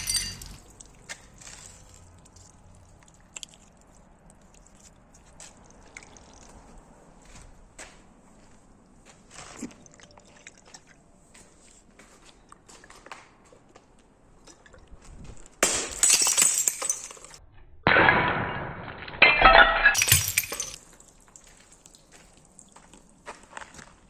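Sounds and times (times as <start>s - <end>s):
glass bottles breaking and crunching: 0.0s - 0.8s, 15.6s - 21.1s.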